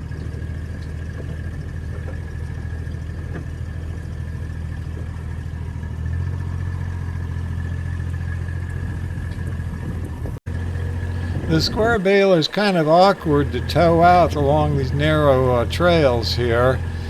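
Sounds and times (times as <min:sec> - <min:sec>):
vehicle engine running: 0:00.0 - 0:17.0
faint steady whine: 0:10.5 - 0:17.0.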